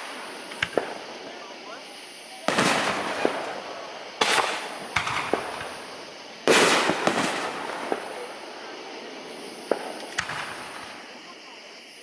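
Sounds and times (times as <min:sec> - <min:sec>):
crackling pops: 0:00.0 - 0:01.4, 0:02.4 - 0:08.5, 0:09.6 - 0:11.1
fireworks boom: 0:00.0 - 0:11.5
fireworks cracks: 0:00.0 - 0:12.0.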